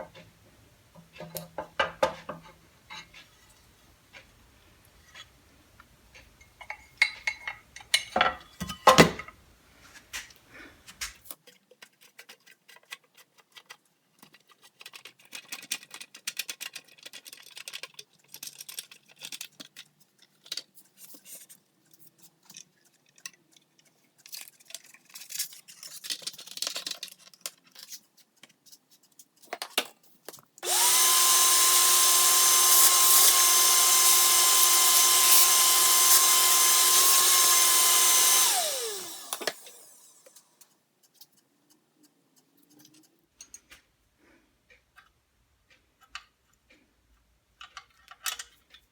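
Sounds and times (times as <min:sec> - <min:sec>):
tools knocking against metal: 0:01.0 - 0:03.1, 0:06.4 - 0:09.3
power tool whining: 0:30.6 - 0:40.4.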